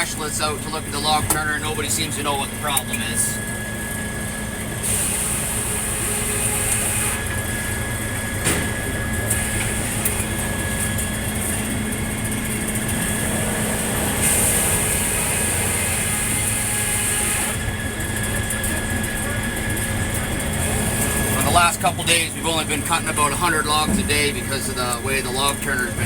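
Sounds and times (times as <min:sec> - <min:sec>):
sawmill engine hum: 0:00.0 - 0:26.0.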